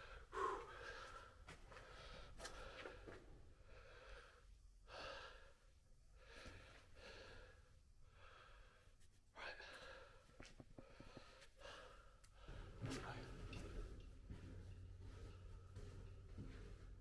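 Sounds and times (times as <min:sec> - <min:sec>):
man breathing hard: 0:00.0 - 0:03.0.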